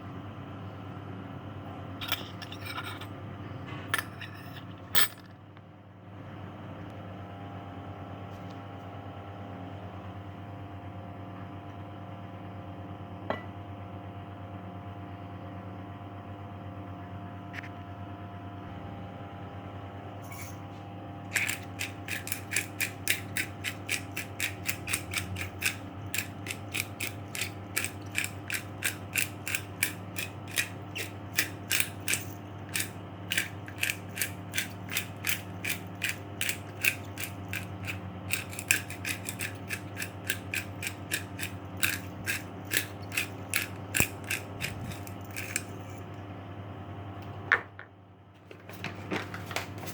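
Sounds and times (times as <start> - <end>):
steady low hum: 12.3 - 49.9
rapid mechanical clicking: 21.3 - 46.0.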